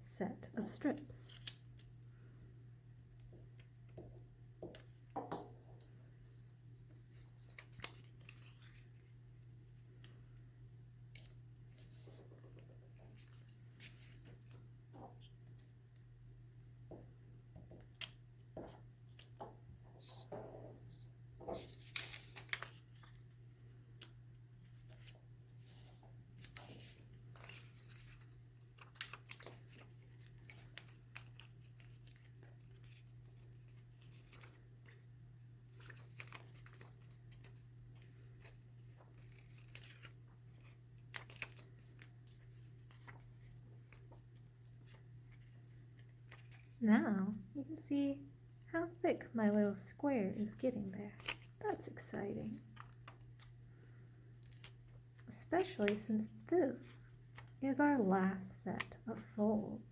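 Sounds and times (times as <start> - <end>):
paper rustling and crinkling: 3.0 - 10.4, 11.1 - 15.7, 17.6 - 46.8, 50.3 - 56.5.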